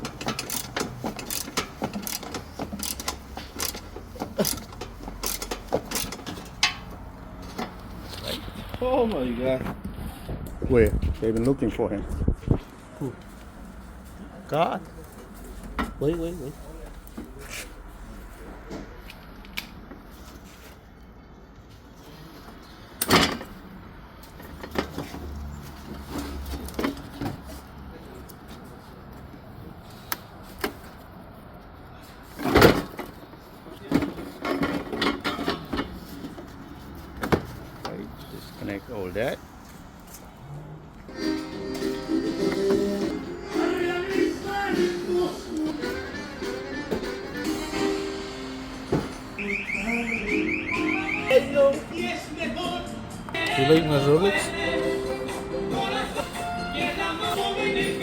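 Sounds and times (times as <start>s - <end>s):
car parts and tools clicking: 0.0s - 9.2s, 18.7s - 21.8s, 22.5s - 31.7s, 32.3s - 38.0s
ratchet wrench clicking: 0.4s - 6.8s.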